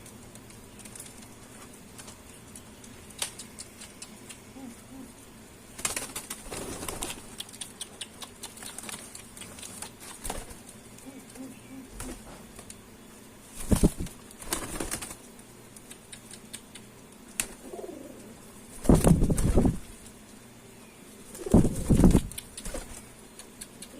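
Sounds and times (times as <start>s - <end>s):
pigeons cooing: 4.4s - 5.4s, 10.9s - 12.5s, 17.6s - 18.5s
pigeon wings flapping: 5.7s - 10.8s, 13.5s - 15.4s, 18.7s - 20.0s, 21.3s - 23.1s.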